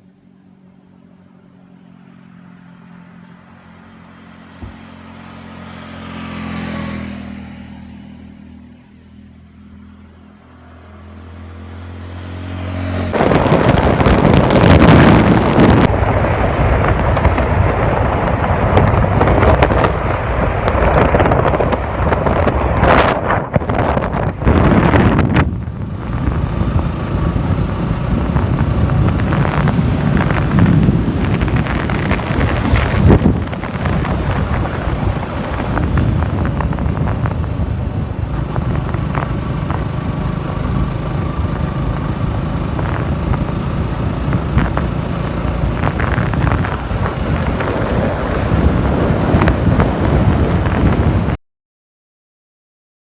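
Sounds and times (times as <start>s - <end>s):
motorcycle engine running: 12.4s - 51.4s
wind buffeting microphone: 12.7s - 51.4s.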